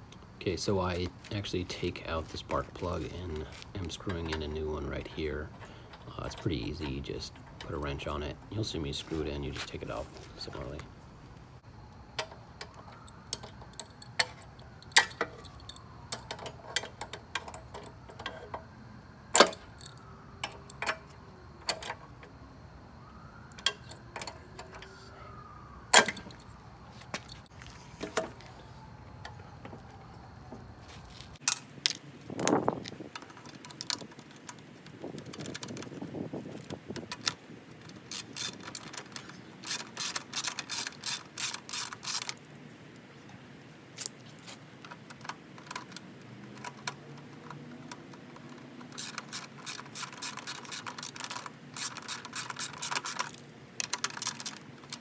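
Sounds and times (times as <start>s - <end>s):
wrench clicking on spark plug: 48.9s - 55.0s.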